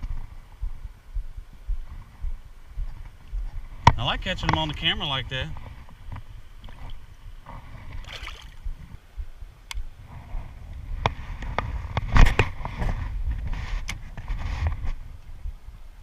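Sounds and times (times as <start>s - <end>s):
water splashing and sloshing: 6.6s - 7.1s, 7.7s - 8.8s.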